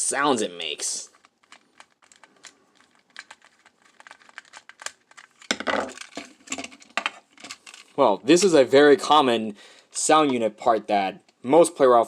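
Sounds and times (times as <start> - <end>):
handling rattle: 1.1 - 7.9.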